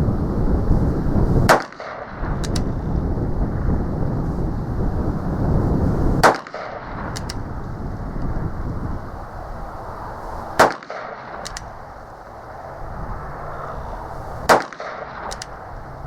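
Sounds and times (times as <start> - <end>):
revolver shots: 10.6 - 11.8, 14.4 - 15.6.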